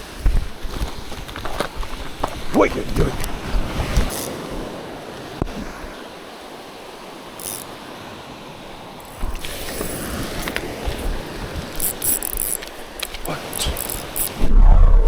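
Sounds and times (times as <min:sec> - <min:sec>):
wind blowing over microphone: 0:00.0 - 0:06.1, 0:12.8 - 0:15.0
sea surf: 0:00.0 - 0:15.0.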